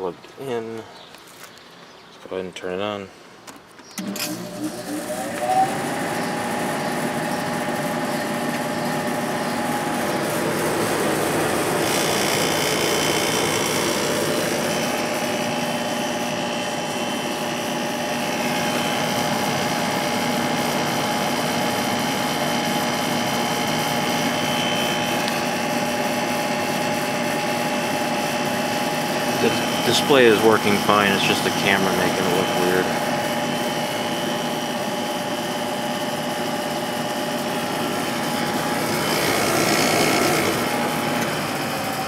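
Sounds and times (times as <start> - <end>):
high-pitched whine: 4.0 - 28.5, 29.1 - 36.0
air conditioner fan hum: 4.0 - 42.0.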